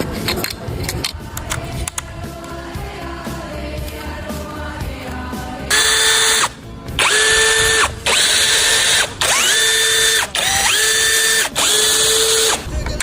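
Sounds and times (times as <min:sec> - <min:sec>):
power tool whining: 0:05.7 - 0:12.7.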